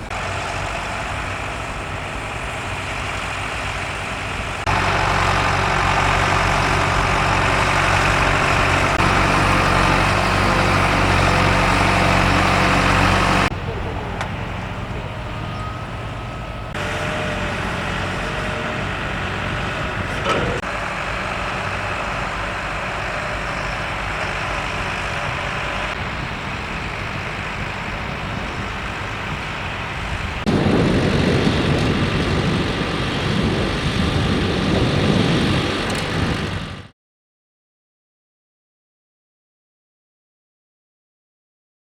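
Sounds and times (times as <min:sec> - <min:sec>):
tractor engines ploughing: 0:00.0 - 0:36.9.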